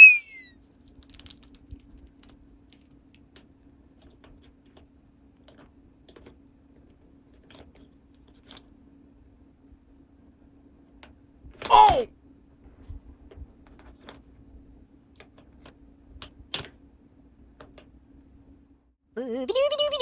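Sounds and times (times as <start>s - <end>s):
plastic toy pieces clicking: 0.0s - 3.4s.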